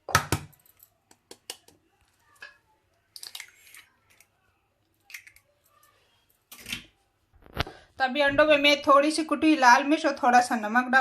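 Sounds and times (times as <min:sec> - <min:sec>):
eggs cracking against a bowl: 0:00.0 - 0:05.6
soft wet squishing: 0:00.8 - 0:07.8.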